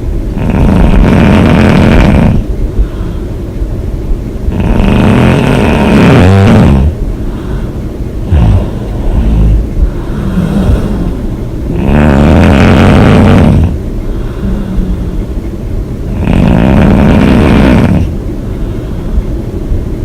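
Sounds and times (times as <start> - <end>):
woman snoring: 0.4 - 2.5, 4.5 - 15.3, 16.1 - 18.2
rasping breaths: 4.5 - 19.5.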